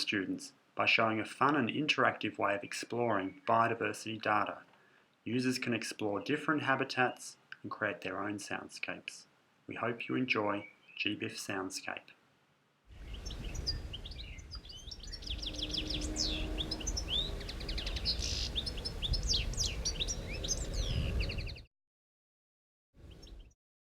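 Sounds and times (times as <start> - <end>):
birds chirping and whistling: 13.0 - 21.7, 23.1 - 23.5.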